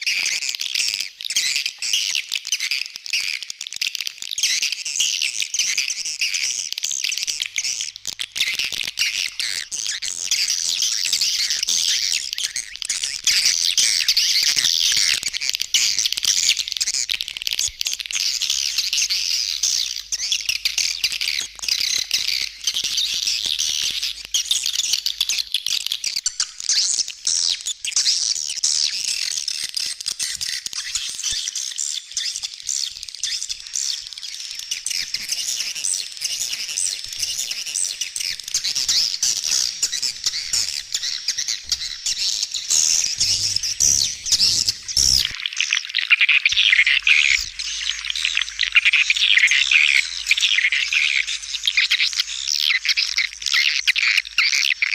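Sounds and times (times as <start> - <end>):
swiftlets twittering: 38.6 - 45.4.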